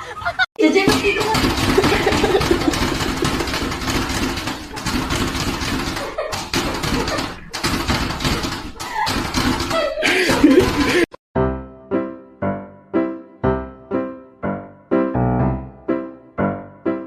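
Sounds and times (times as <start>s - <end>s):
people talking and laughing: 8.4s - 11.1s
piano notes: 10.6s - 17.0s.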